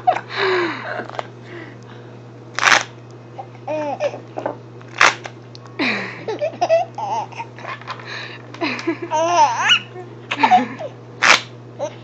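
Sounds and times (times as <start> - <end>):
baby laughing: 3.7 - 4.2, 6.3 - 7.9, 9.0 - 11.0, 11.8 - 12.0.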